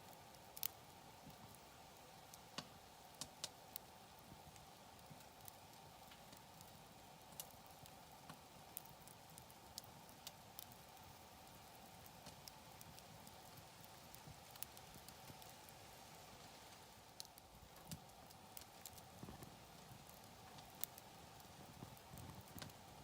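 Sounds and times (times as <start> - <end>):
campfire wood crackling: 0.0 - 23.0
faint steady hiss: 0.0 - 23.0.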